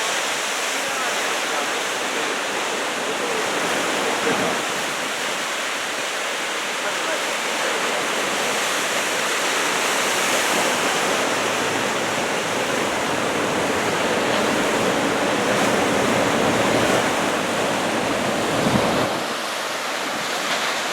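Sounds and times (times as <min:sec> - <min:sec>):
ocean waves breaking: 0:00.0 - 0:20.9.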